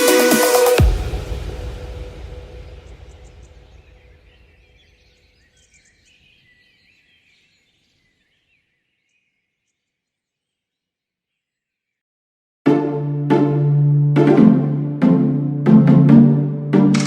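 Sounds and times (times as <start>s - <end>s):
background music: 0.0s - 4.4s, 12.6s - 17.0s.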